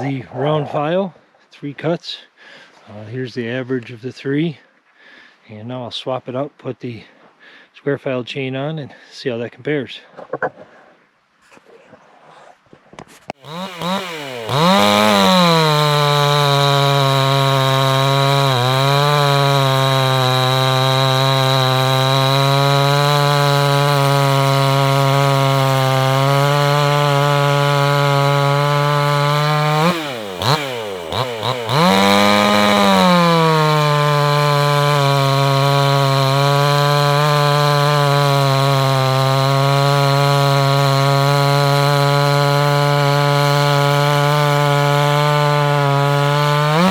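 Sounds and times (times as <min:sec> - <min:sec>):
chainsaw cutting wood: 0:13.3 - 0:46.9.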